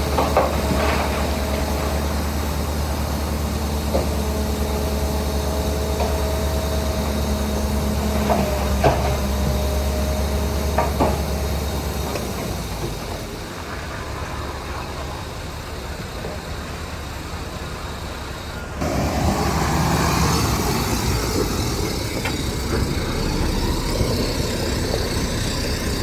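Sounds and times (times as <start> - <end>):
bulldozer engine droning: 0.0 - 26.0.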